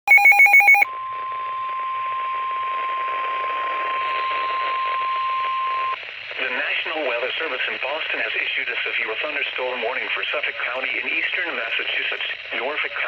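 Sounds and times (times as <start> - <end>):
pulsing electronic signal: 0.1 - 0.8
steady warning alarm tone: 0.1 - 2.2
radio hiss: 2.7 - 13.0.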